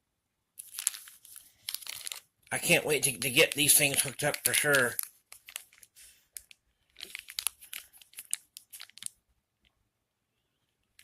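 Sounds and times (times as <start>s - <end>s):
plastic packaging crinkling: 0.6s - 9.2s.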